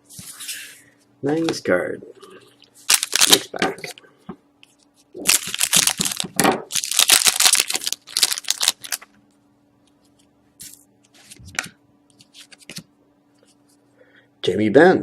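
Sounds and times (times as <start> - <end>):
card pack wrapper crinkling: 2.8 - 3.9, 5.2 - 9.1
cards clicking and rustling: 2.9 - 3.9, 5.3 - 9.1.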